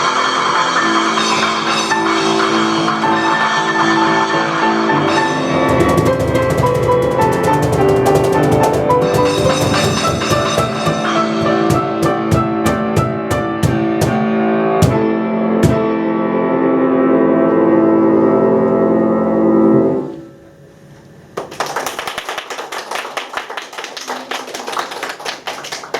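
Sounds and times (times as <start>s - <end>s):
sharp percussion hits: 0.0s - 15.9s
piano chords: 0.0s - 21.4s
hand clapping: 5.7s - 14.2s, 21.4s - 25.9s.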